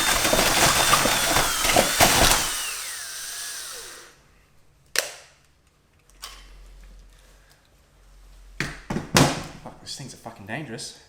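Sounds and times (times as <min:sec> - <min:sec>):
power drill motor whine: 0:00.0 - 0:04.2.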